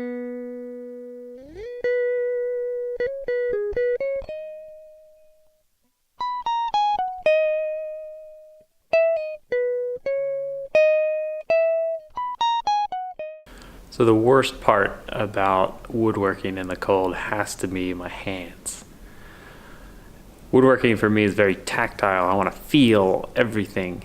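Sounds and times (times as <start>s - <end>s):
solo guitar plucked melody: 0.0s - 13.6s.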